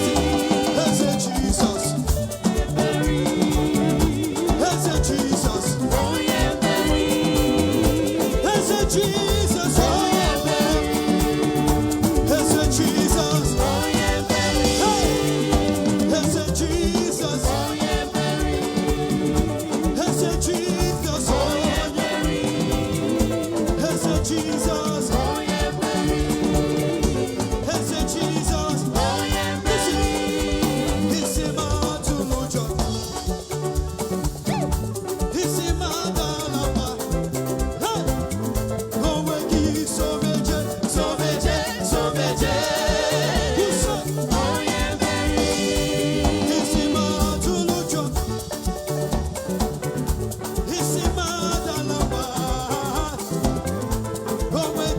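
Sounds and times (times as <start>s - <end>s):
person singing: 0.0s - 38.2s, 38.9s - 49.3s, 50.5s - 54.9s
live gospel band music: 0.0s - 54.9s.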